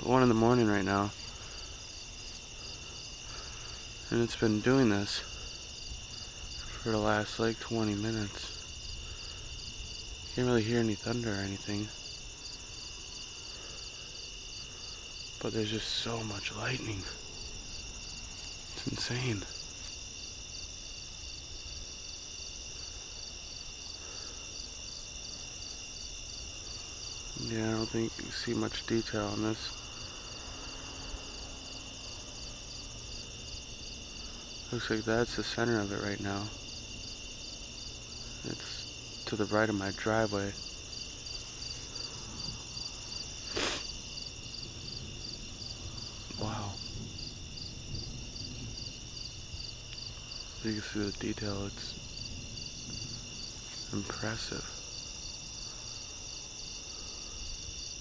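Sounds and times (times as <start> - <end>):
crickets trilling and chirping: 0.0 - 58.0
short hiss: 43.4 - 44.0.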